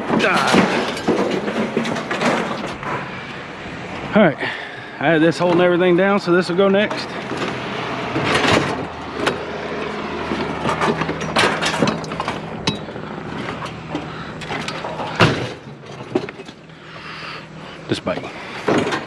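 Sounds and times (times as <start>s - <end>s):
scrap metal clanking: 0.0s - 3.6s, 6.8s - 19.0s.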